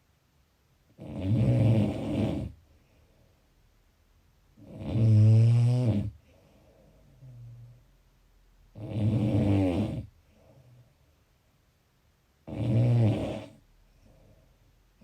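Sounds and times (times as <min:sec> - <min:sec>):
loud buzzing snores: 0:01.0 - 0:02.6, 0:04.6 - 0:06.2, 0:08.7 - 0:10.1, 0:12.4 - 0:13.6.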